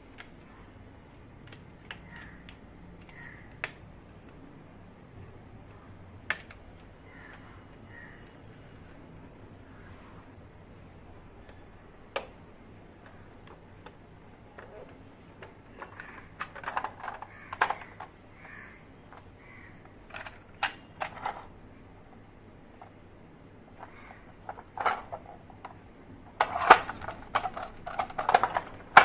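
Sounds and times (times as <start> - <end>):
plastic toy pieces clicking: 1.4 - 3.8, 15.4 - 18.2, 20.0 - 21.5, 23.8 - 29.0.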